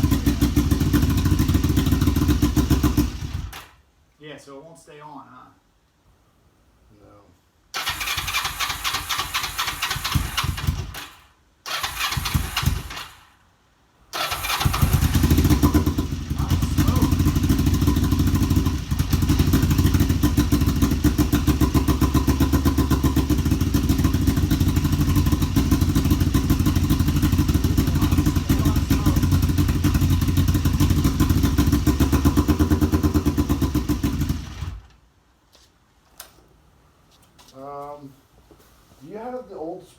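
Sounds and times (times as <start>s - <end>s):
motorcycle engine idling roughly: 0.0s - 3.5s, 14.4s - 34.8s
motorcycle engine starting attempts: 0.0s - 3.8s, 7.8s - 13.4s, 14.1s - 35.0s.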